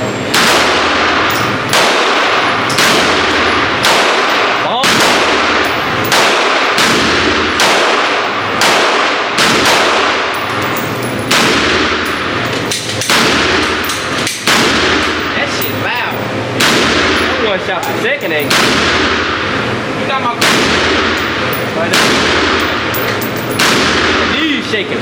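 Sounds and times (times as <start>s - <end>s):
gunshots with echo: 0.3s - 10.3s, 11.3s - 12.1s, 20.4s - 22.9s, 23.6s - 24.4s.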